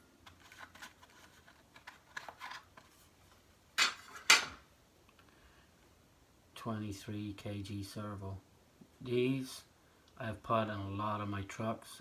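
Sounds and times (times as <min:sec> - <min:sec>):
plastic parts clicking: 0:00.2 - 0:02.9.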